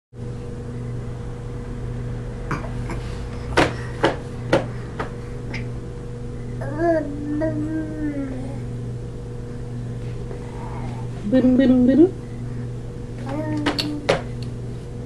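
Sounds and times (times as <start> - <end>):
low electrical hum: 0.2 - 15.0
sharp knocks: 3.5 - 5.2.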